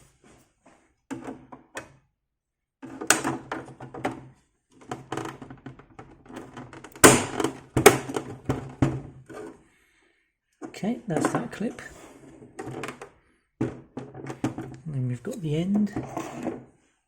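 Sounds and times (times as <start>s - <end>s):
plastic case knocking and clicking: 2.8s - 9.5s, 12.5s - 14.8s.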